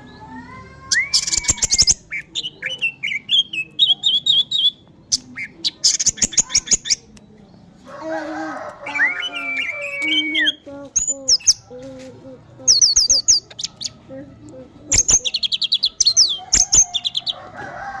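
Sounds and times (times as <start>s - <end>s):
thrush singing: 8.0s - 17.3s.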